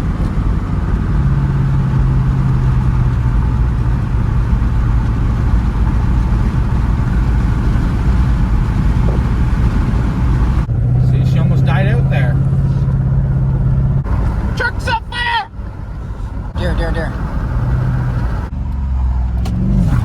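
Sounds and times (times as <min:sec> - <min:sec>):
engine with rod knock: 0:00.0 - 0:10.6.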